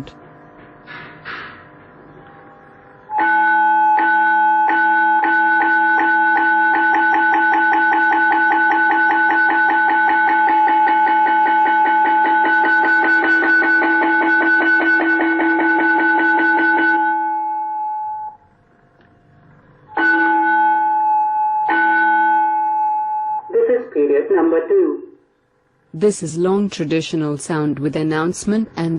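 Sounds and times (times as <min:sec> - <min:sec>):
bell tone: 0:02.1 - 0:18.4, 0:19.9 - 0:23.5
school bell ringing: 0:03.1 - 0:18.4, 0:19.9 - 0:23.5.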